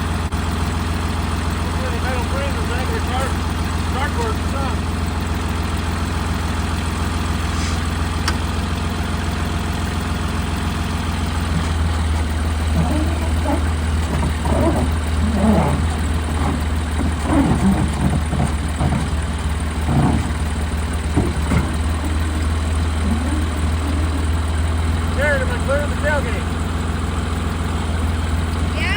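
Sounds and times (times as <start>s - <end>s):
engine idling: 0.0s - 28.9s
people talking: 1.6s - 4.8s, 25.1s - 26.5s, 28.7s - 28.9s.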